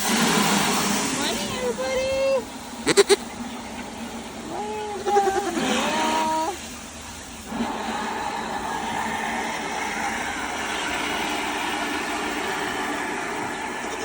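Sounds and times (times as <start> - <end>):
faint hum: 0.0 - 14.0
steady rushing noise: 0.0 - 14.0.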